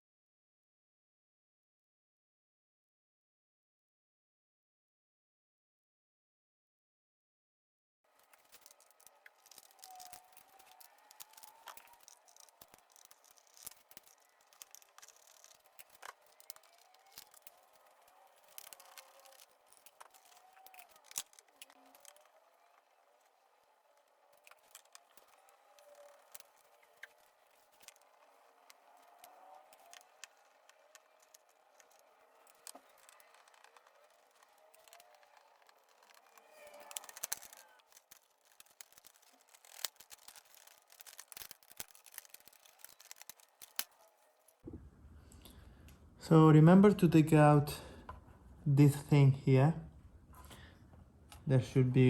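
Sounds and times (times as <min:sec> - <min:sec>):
small screws and plastic parts clicking: 0:08.1 - 0:44.6.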